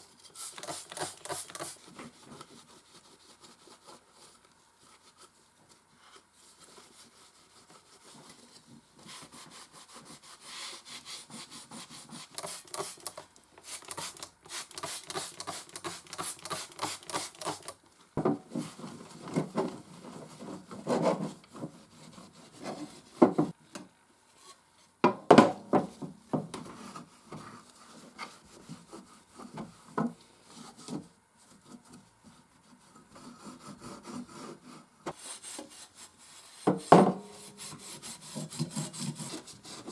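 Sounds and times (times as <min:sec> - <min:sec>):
rubbing and scrubbing strokes: 0:00.3 - 0:17.7, 0:26.7 - 0:39.9.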